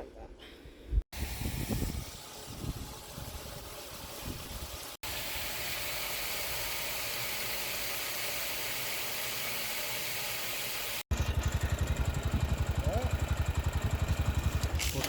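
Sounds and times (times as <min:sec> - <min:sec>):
small engine thumping: 0:11.1 - 0:15.0.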